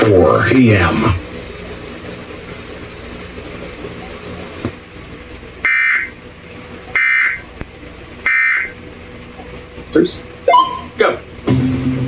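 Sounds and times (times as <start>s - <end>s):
low steady hum: 0.0s - 12.0s
buzzy digital data tones: 0.3s - 4.7s.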